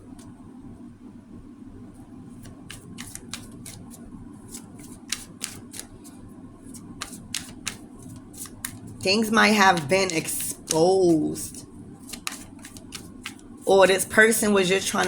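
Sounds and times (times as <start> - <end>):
steady low hum: 0.0 - 15.0
cards clicking and tapping: 2.4 - 6.1, 6.7 - 13.5.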